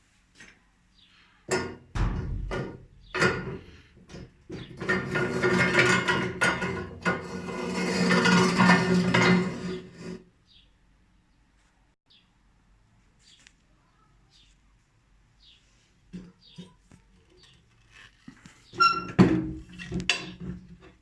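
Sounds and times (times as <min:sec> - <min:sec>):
sharp knocks and scrapes: 0:01.5 - 0:10.2, 0:16.2 - 0:21.0
low hum: 0:02.0 - 0:04.2
grinding rasp: 0:04.6 - 0:10.2.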